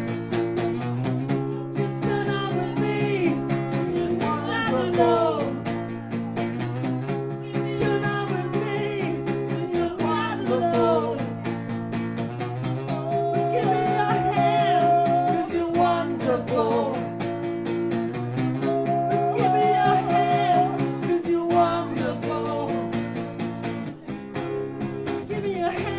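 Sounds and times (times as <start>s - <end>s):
acoustic guitar chords: 0.0s - 25.9s
person singing: 1.7s - 5.7s, 7.4s - 11.5s, 12.6s - 17.2s, 18.6s - 23.2s, 25.2s - 25.9s.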